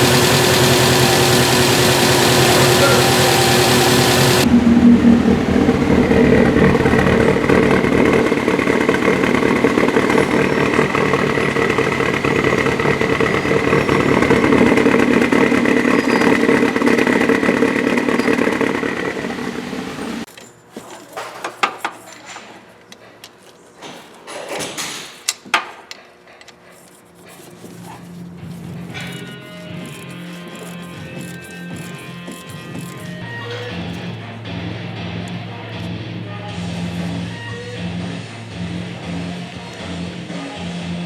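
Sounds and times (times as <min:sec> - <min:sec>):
car engine idling: 0:00.0 - 0:20.3.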